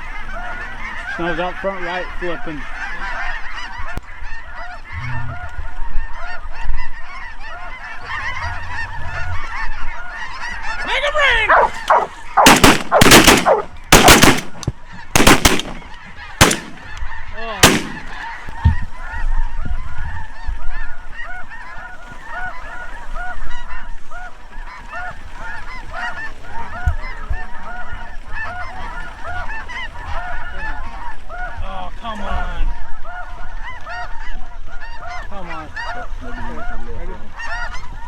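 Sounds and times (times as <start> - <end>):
geese honking: 0.0 - 38.0
shotgun blasts: 11.5 - 17.0, 17.6 - 18.3.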